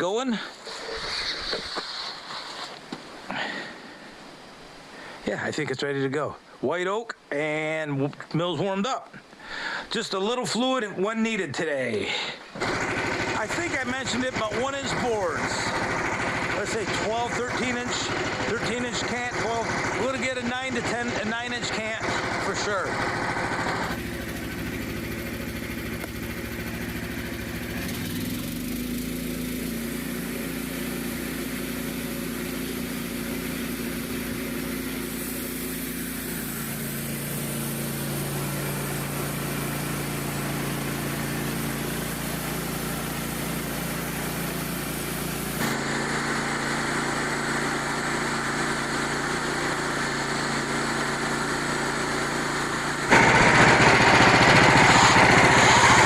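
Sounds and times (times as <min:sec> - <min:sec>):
small gas engine running: 0:12.0 - 0:56.0
sawmill sawing a log: 0:12.6 - 0:56.0.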